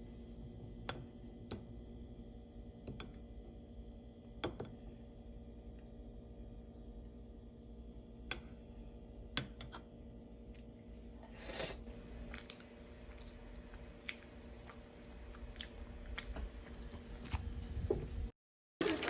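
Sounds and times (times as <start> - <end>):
person chewing crunchy food: 11.2 - 17.0.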